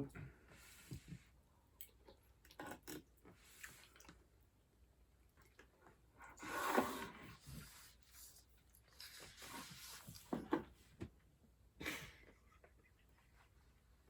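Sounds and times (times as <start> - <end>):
utensil and mouth eating noises: 1.8 - 4.4, 5.2 - 10.6.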